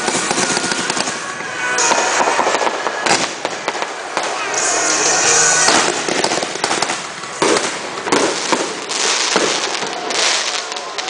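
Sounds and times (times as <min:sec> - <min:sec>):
fireworks bursts: 0:00.0 - 0:11.0
fireworks crackling: 0:00.0 - 0:11.0.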